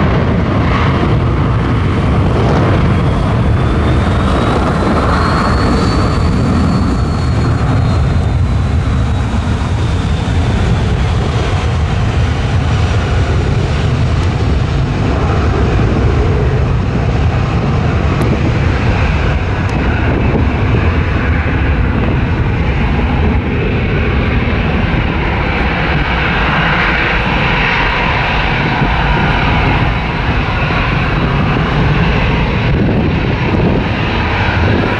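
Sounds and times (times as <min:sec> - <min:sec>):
jet engines roaring: 0:00.0 - 0:34.9
thin jet whine: 0:00.0 - 0:34.9.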